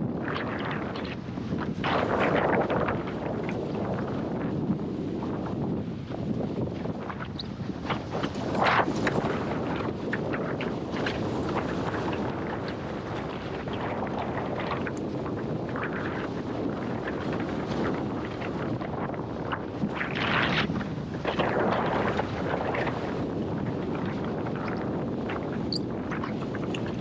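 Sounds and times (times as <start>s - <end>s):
wind buffeting microphone: 0.0s - 27.0s
water rushing under board: 6.7s - 27.0s.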